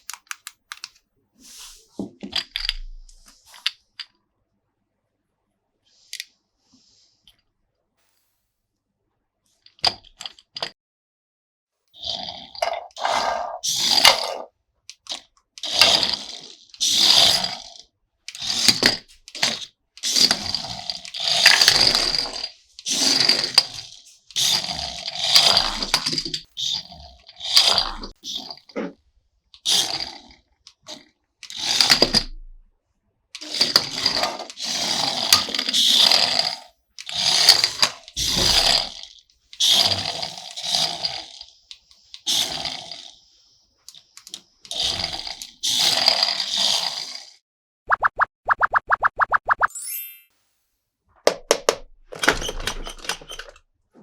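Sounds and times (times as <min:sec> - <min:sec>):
toy packaging rattling and crinkling: 0:00.0 - 0:01.0.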